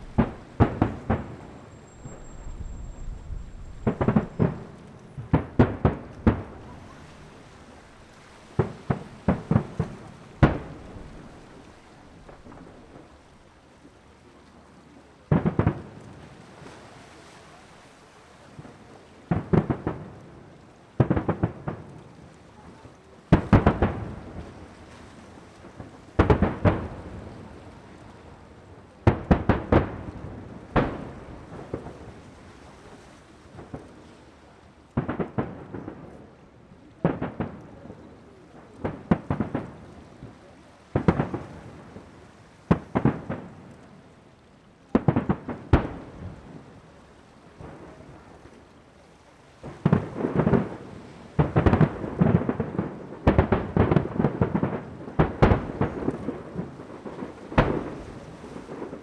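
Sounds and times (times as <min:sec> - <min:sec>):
fireworks bursting with loud bangs: 0:00.0 - 0:13.3, 0:15.3 - 0:16.9, 0:18.5 - 0:28.0, 0:29.0 - 0:36.3, 0:37.0 - 0:44.0, 0:44.9 - 0:46.7, 0:49.6 - 0:59.0.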